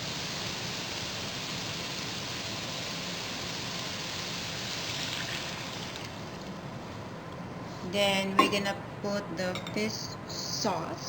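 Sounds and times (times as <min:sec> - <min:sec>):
water hissing in hot pan: 0:00.0 - 0:07.1.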